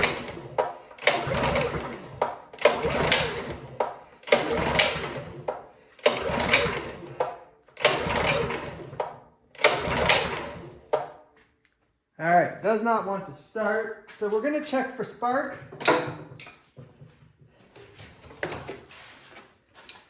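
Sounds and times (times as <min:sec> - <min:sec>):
engine cranking over: 0:00.0 - 0:11.0
recoil starter pulled: 0:00.0 - 0:11.2.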